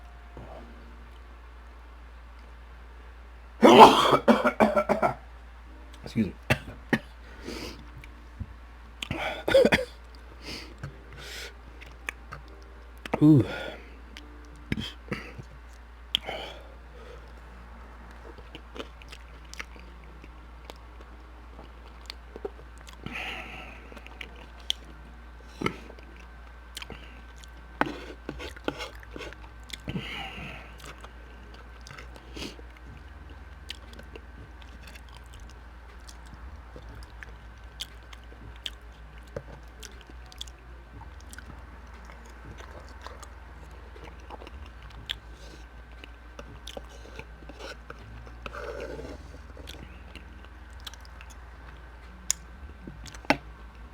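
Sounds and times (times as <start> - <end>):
faint steady hum: 0.0 - 53.9
person chewing food: 6.5 - 53.9.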